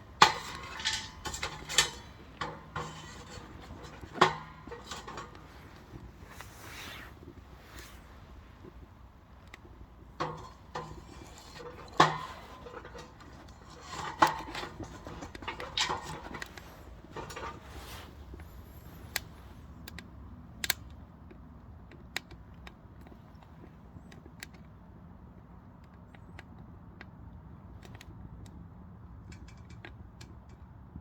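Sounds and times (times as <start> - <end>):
knocks and clinks at stove: 0.0 - 6.4, 10.2 - 18.0.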